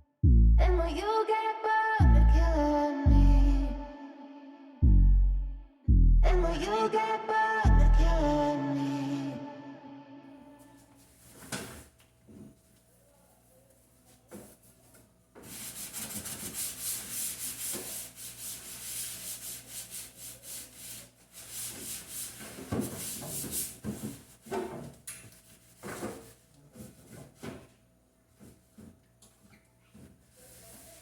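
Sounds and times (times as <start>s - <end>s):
scrubbing strokes: 15.4s - 24.4s.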